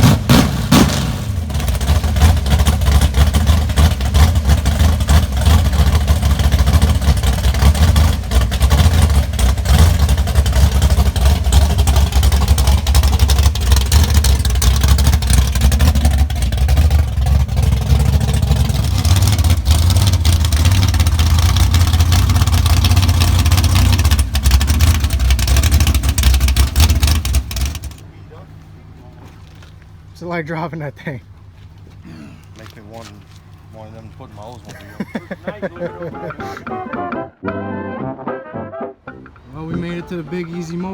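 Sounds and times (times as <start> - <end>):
car engine rumbling: 0.0 - 37.5, 39.0 - 40.9.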